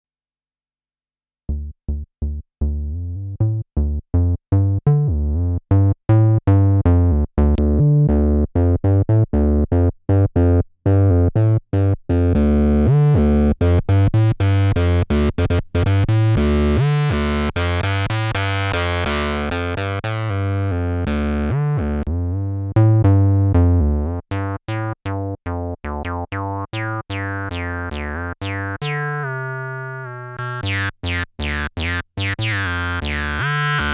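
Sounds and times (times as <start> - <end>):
squelchy acid synth bassline: 12.3 - 22.2, 22.9 - 33.9.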